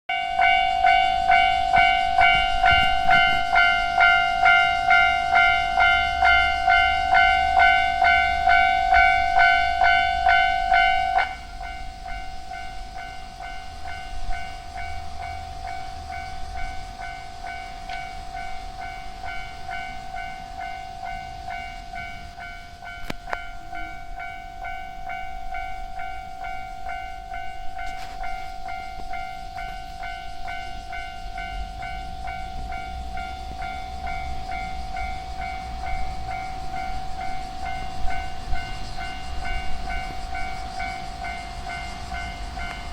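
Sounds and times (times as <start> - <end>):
level crossing bell ringing: 0.1 - 42.9.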